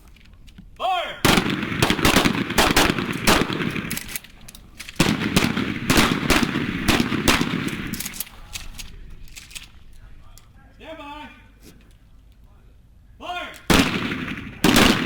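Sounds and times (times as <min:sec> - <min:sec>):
shotguns firing rapidly: 0:01.2 - 0:08.3, 0:13.7 - 0:15.0.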